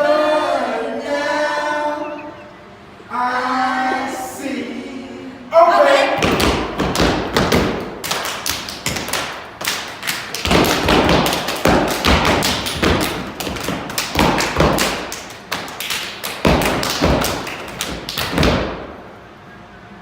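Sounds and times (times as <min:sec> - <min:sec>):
claps and hand slaps: 0:06.2 - 0:18.9
foot stomps: 0:06.2 - 0:19.0.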